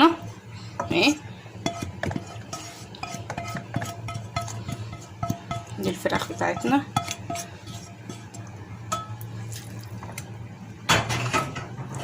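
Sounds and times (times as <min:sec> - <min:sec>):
spoon and dish clinking: 0:08.9 - 0:09.2
dish clatter: 0:10.9 - 0:12.0.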